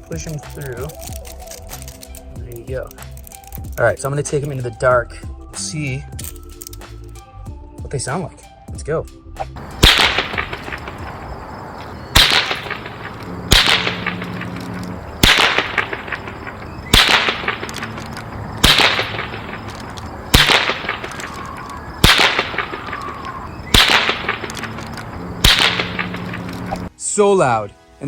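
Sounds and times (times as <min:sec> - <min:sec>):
flash bangers exploding: 0:09.6 - 0:26.9.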